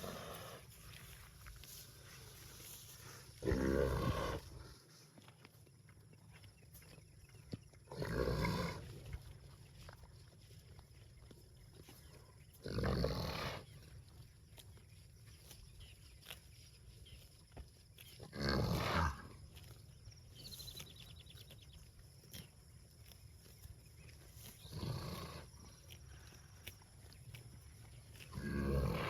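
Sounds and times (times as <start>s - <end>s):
cows mooing: 3.4s - 4.5s, 28.3s - 29.0s.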